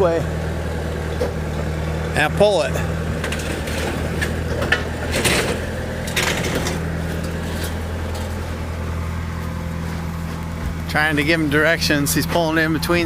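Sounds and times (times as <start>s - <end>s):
vehicle engine running: 0.0s - 13.0s
wood cracking and creaking: 3.2s - 8.4s.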